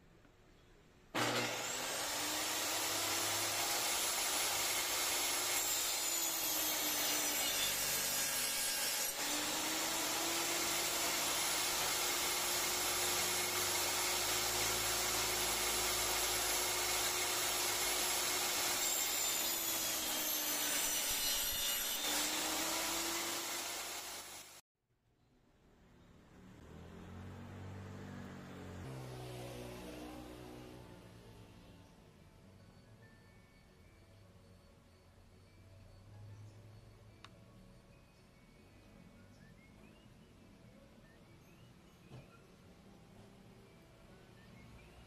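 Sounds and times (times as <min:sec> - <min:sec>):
electric saw cutting wood: 0:01.2 - 0:24.6.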